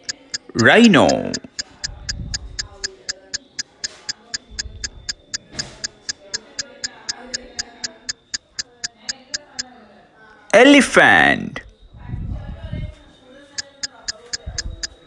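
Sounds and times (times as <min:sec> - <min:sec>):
clock ticking: 0:00.0 - 0:09.6, 0:13.6 - 0:15.0
faint music: 0:00.0 - 0:15.0.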